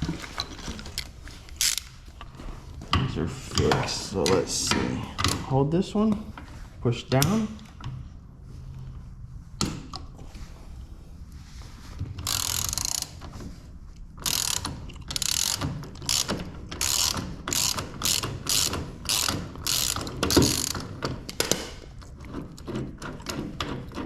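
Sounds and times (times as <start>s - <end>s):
ratchet wrench clicking: 1.6s - 1.9s, 12.2s - 13.2s, 14.2s - 20.9s.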